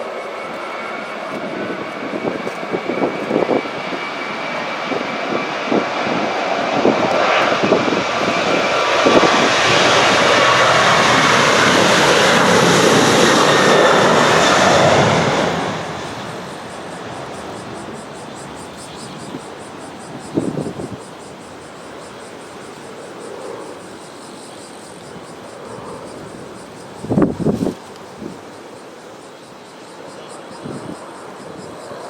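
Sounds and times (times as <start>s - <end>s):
jet engines roaring: 0.0s - 29.2s
wind buffeting microphone: 1.2s - 21.3s, 25.7s - 28.4s.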